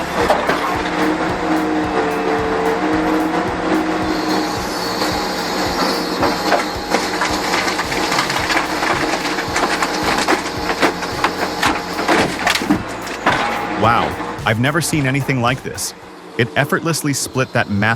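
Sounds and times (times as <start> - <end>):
log splitter machine drone: 0.0 - 17.8.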